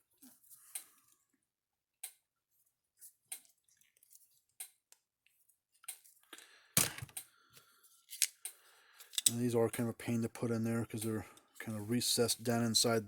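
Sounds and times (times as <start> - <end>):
hand tool clicking and snipping: 8.2 - 9.8.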